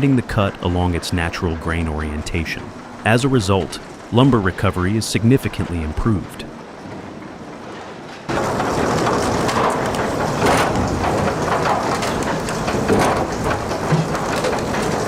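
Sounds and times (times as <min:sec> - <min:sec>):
sawmill machinery din: 0:00.0 - 0:06.6
clatter of logs on conveyors: 0:00.0 - 0:15.0.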